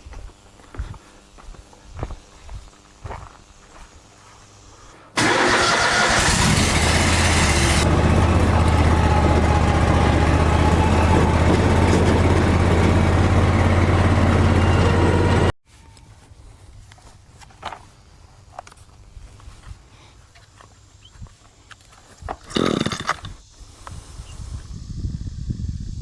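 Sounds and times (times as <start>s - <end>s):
engine starting and running: 5.2s - 15.6s.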